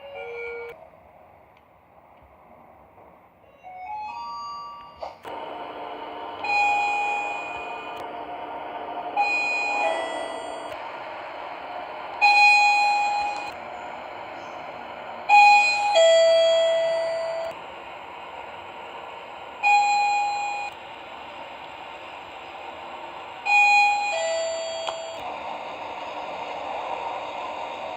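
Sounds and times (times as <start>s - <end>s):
steady background hum: 0.0s - 27.9s
elevator chime ding-dong: 3.6s - 5.0s, 6.4s - 7.9s, 9.2s - 10.8s, 12.2s - 13.6s, 15.2s - 17.6s, 19.6s - 20.8s, 23.5s - 25.2s.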